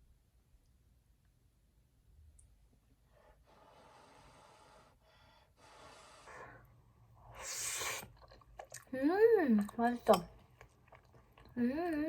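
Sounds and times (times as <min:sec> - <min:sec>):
person blowing out breath: 0:07.3 - 0:08.1.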